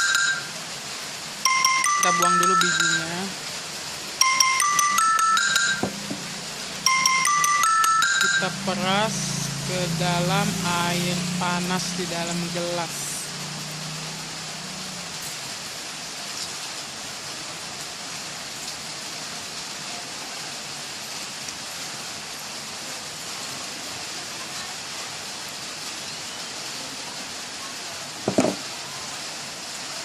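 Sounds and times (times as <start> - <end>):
short knock: 28.3 - 28.6.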